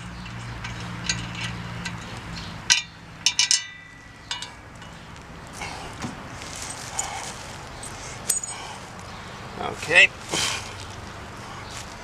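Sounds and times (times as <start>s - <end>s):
metal parts clinking: 0.6s - 2.1s, 8.2s - 8.6s.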